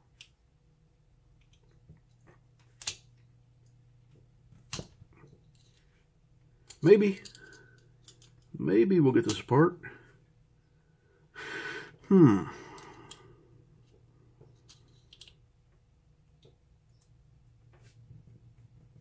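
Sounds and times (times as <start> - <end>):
man exhaling and sighing: 11.3 - 13.5.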